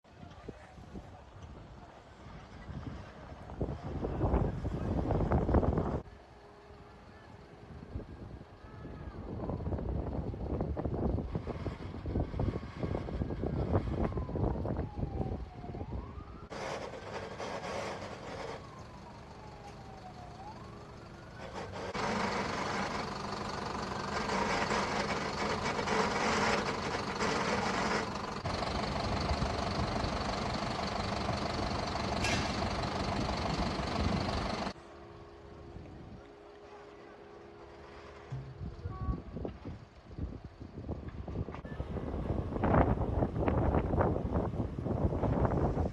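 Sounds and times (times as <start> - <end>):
wind buffeting microphone: 0.1 - 6.1, 7.6 - 17.4, 38.4 - 45.9
engine hum: 0.1 - 45.9
fire engine siren wailing: 12.4 - 34.8.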